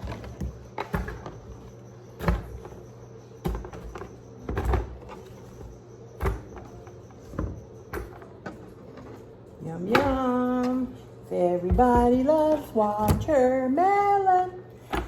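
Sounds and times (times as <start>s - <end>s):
watermelon thudding into buckets: 0.0s - 8.8s, 11.5s - 13.8s, 14.8s - 15.0s.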